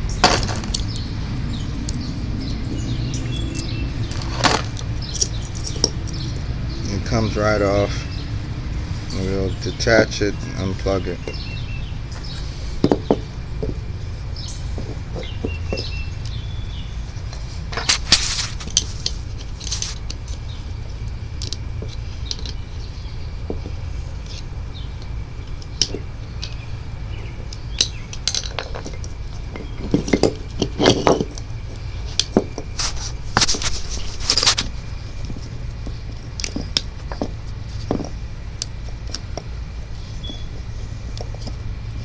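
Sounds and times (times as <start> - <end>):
steady low rumble: 0.0 - 42.0
metal tools clinking: 2.8 - 6.3, 9.1 - 13.8, 25.0 - 38.2.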